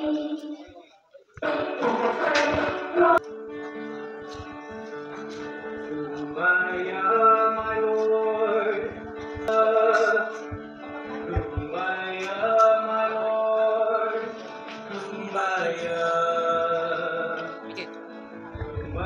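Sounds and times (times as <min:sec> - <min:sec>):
slow singing in long notes: 0:00.0 - 0:17.4
plucked guitar: 0:00.0 - 0:19.0.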